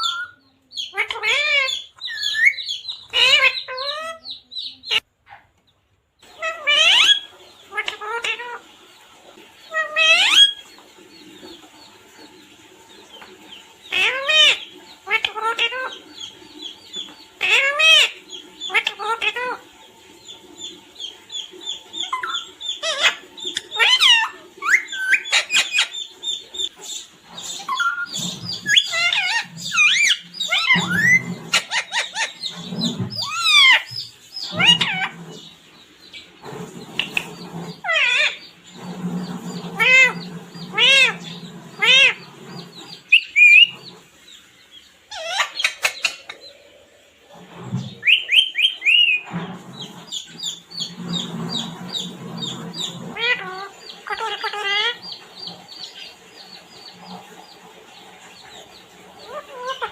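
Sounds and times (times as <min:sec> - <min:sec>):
parrot chirping and whistling: 0:00.0 - 0:04.2, 0:22.0 - 0:25.9, 0:27.5 - 0:35.2, 0:43.1 - 0:43.8, 0:48.0 - 0:49.3.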